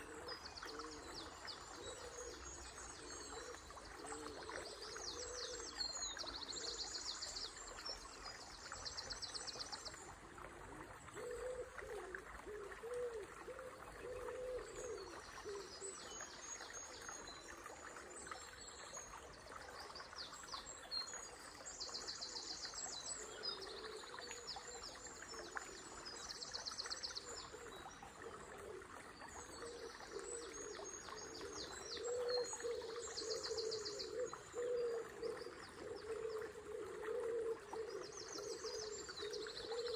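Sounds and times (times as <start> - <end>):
low wavering hoot-like calls: 10.7 - 16.0, 27.6 - 39.9
songbirds trilling: 29.4 - 39.9.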